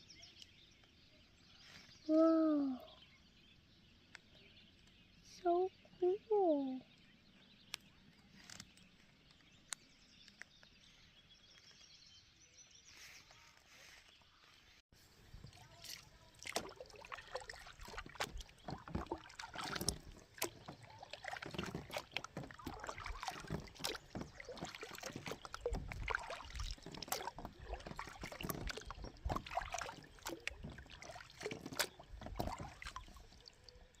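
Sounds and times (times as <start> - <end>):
water splashing and dripping: 15.3 - 34.0.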